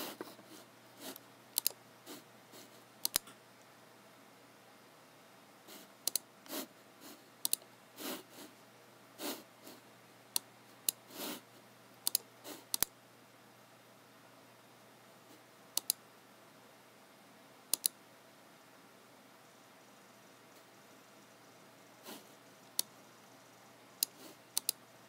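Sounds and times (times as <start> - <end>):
computer mouse clicking: 1.1 - 1.8, 3.0 - 3.4, 6.0 - 6.6, 7.4 - 7.7, 10.3 - 11.0, 12.0 - 12.9, 15.8 - 16.0, 17.7 - 18.0, 22.7 - 22.9, 24.0 - 24.8.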